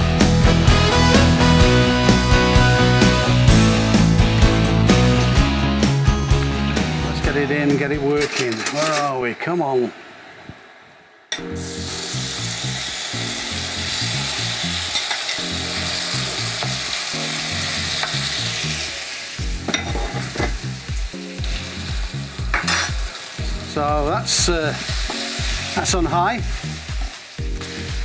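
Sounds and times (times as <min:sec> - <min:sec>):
wok sizzling hiss: 0:00.0 - 0:28.0.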